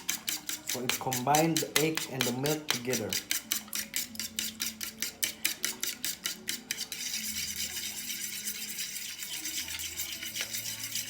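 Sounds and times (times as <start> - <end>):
utensil beating eggs in a bowl: 0.0 - 11.0.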